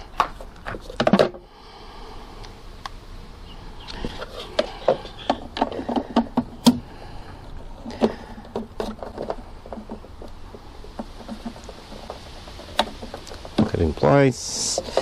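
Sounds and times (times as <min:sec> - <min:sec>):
plastic clicks and knocks: 0:04.5 - 0:06.8, 0:07.8 - 0:13.8.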